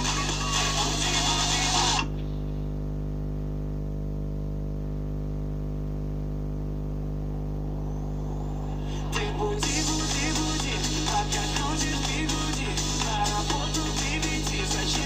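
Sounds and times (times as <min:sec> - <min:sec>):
music: 0:00.0 - 0:02.1, 0:08.9 - 0:15.0
steady low hum: 0:02.0 - 0:15.0.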